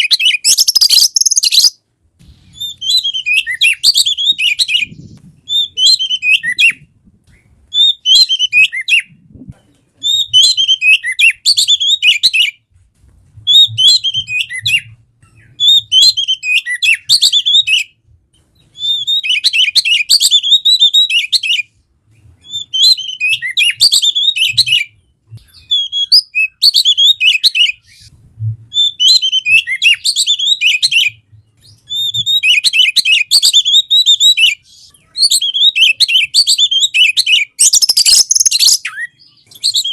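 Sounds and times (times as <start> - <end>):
songbird whistling and chirping: 0.0 - 9.2, 10.0 - 12.7, 13.4 - 39.9.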